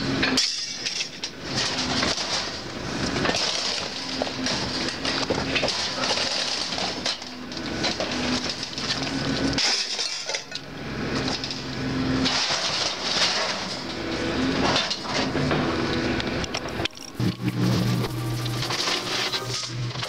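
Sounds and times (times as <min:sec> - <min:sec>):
scrap metal clanking: 0:16.8 - 0:20.0.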